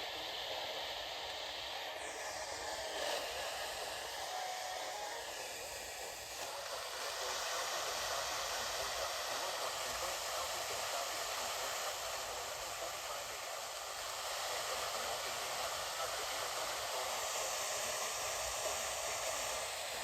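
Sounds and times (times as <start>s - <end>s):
radio static hiss: 0.0s - 20.0s.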